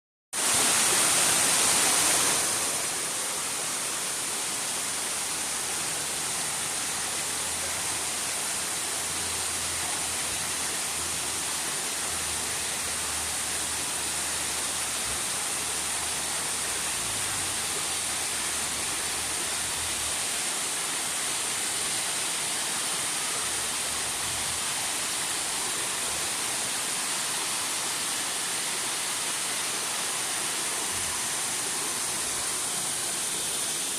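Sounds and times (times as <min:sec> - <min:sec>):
river water rushing: 0:00.4 - 0:33.9.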